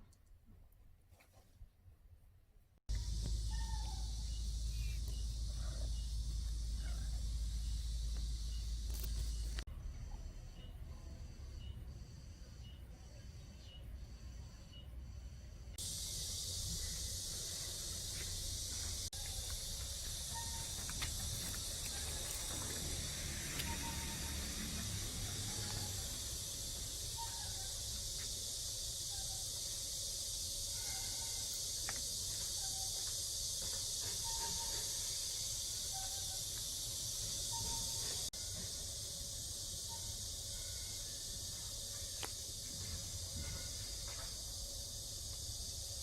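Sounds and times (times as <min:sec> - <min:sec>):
faint chirping calls: 0:02.9 - 0:11.9, 0:15.8 - 0:38.6
insect chorus drone: 0:02.9 - 0:46.0.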